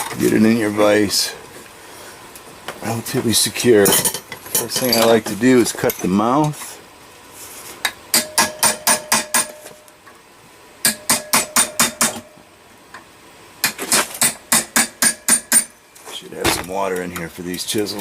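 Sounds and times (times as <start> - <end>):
hammer striking chisel on metal: 8.1 - 9.7, 10.8 - 12.3, 13.6 - 15.8.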